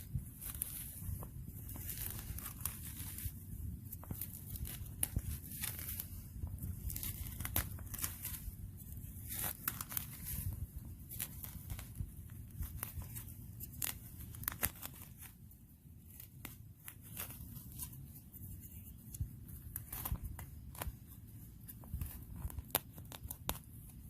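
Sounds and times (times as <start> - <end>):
packaging crinkling: 0.2 - 15.4.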